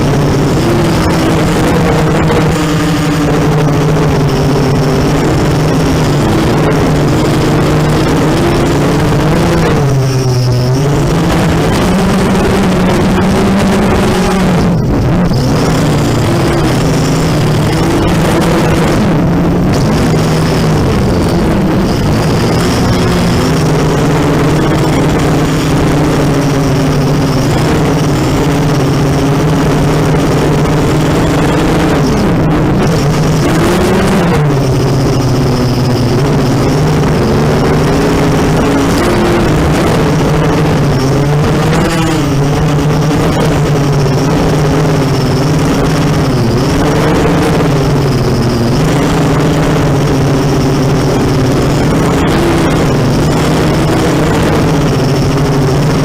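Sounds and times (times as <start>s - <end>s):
drone motors and propellers whining: 0.0s - 56.0s.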